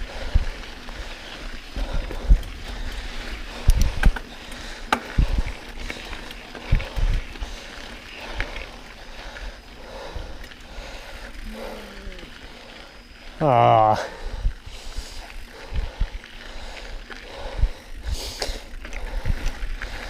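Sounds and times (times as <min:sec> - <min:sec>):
bike thumping and rattling: 0:01.7 - 0:07.6.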